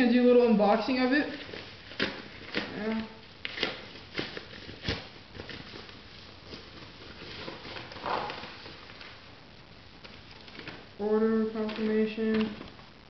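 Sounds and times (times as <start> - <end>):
packaging rustling and crinkling: 0.8 - 12.9.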